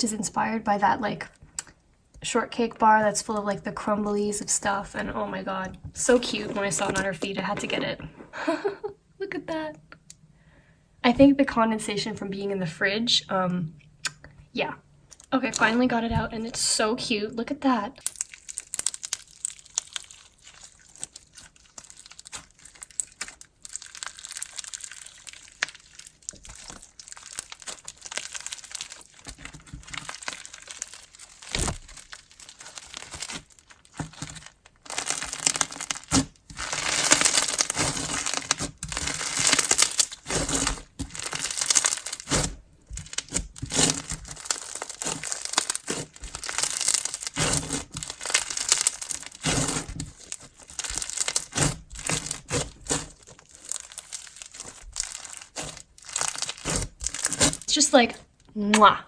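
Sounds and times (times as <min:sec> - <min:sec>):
slime squished by hand: 0:18.0 - 0:59.0.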